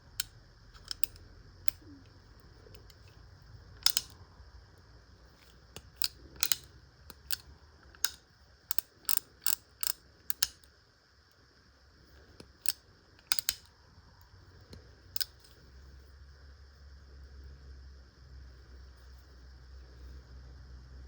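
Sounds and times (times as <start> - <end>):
revolver action clicking: 3.8 - 4.2, 5.4 - 10.7, 12.4 - 13.7.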